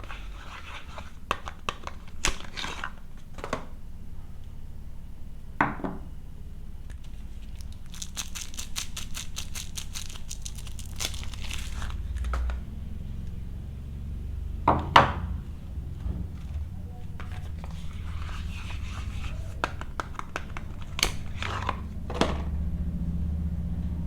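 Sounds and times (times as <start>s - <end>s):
wrapper tearing and crinkling: 7.1s - 12.6s.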